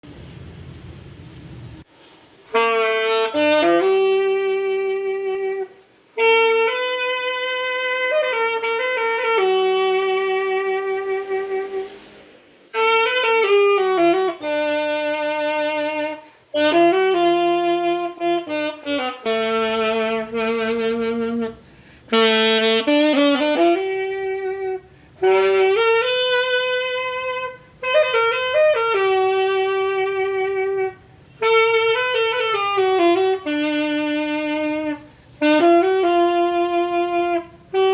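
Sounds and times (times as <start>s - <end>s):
instrumental melody: 12.7s - 37.9s.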